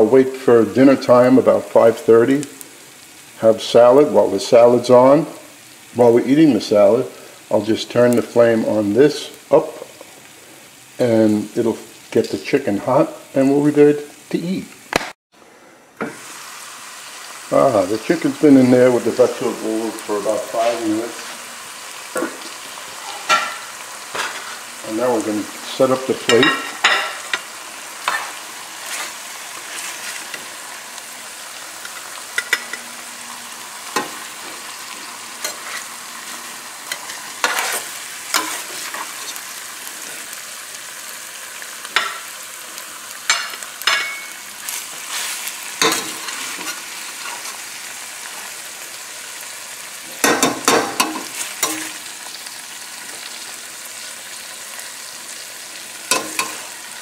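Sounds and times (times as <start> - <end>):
food sizzling in a frying pan: 0.0 - 57.0
utensils knocking and scraping pan: 28.0 - 30.4, 35.4 - 35.9, 36.9 - 39.4, 45.8 - 47.6, 50.2 - 52.0, 56.1 - 56.7.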